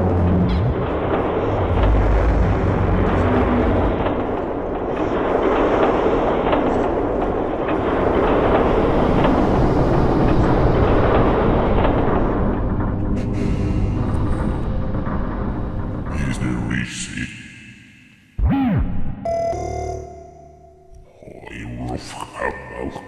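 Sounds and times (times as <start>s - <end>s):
loud continuous rumble: 0.0s - 16.6s.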